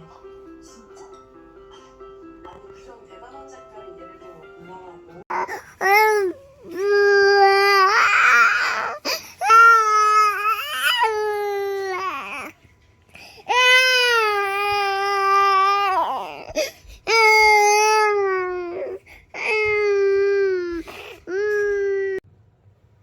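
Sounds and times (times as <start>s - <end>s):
baby crying: 5.3s - 12.5s, 13.5s - 22.2s.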